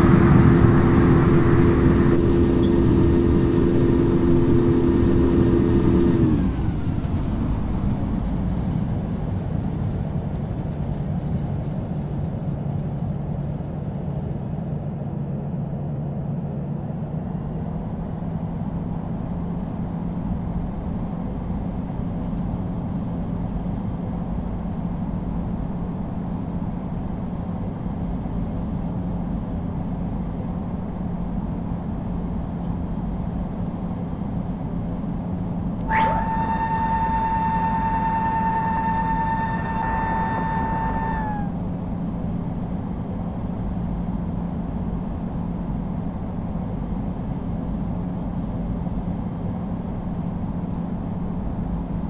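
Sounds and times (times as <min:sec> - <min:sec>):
airliner cabin engine rush: 0:00.0 - 0:09.4, 0:17.3 - 0:48.7.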